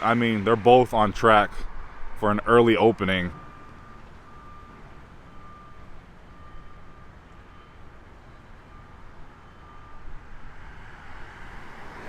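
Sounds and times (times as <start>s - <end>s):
low rumble of traffic and machinery: 0.0s - 12.0s
backup alarm beeping: 2.6s - 10.1s.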